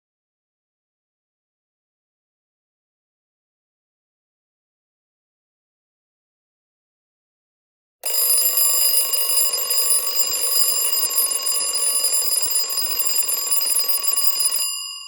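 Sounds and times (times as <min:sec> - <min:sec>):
alarm clock ringing: 0:08.0 - 0:15.0.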